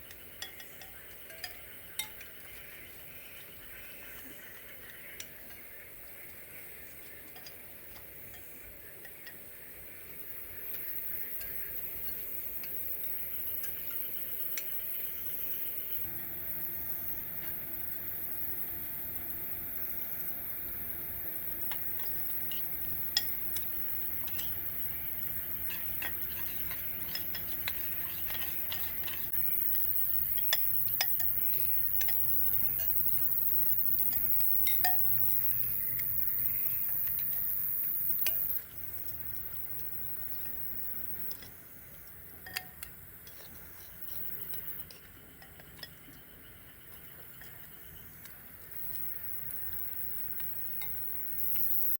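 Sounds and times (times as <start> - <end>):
steady high hiss: 0.0 - 51.9
cutlery clinking against bowls: 0.4 - 2.4, 21.6 - 29.4, 34.1 - 36.0.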